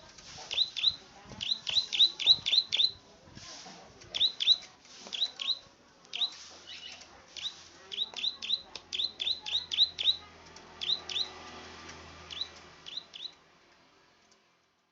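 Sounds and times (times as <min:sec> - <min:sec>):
songbird sharp chirps: 0:00.5 - 0:03.0, 0:04.1 - 0:11.4, 0:12.2 - 0:13.4.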